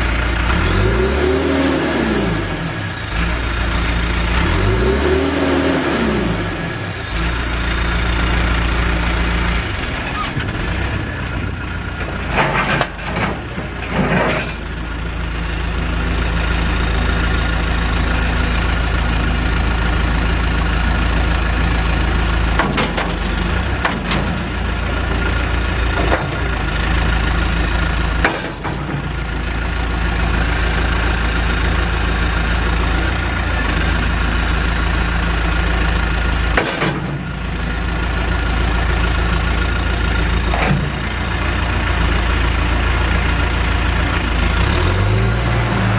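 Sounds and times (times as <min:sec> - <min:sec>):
diesel engine running: 0:00.0 - 0:45.9
knocks and clunks: 0:11.9 - 0:14.6, 0:22.5 - 0:24.6, 0:25.9 - 0:26.7, 0:28.2 - 0:29.1, 0:36.6 - 0:37.3, 0:40.5 - 0:41.0.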